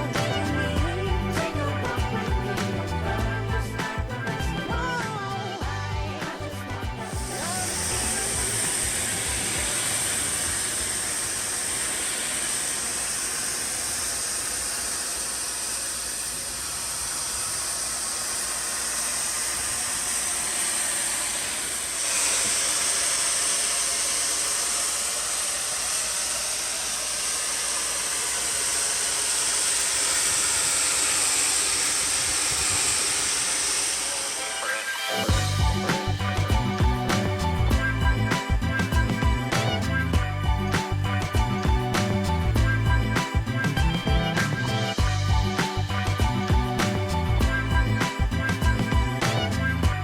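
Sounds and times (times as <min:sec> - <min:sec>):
steam cleaning gun hissing: 0:05.7 - 0:39.6.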